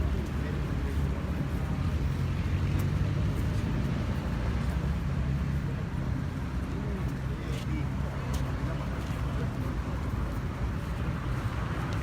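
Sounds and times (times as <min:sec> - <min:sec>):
traffic engine rumble: 0:00.0 - 0:12.0.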